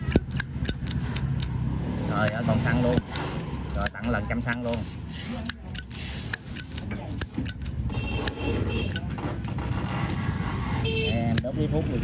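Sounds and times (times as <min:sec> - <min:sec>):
lighter lid clicking metallically: 0:00.1 - 0:01.5.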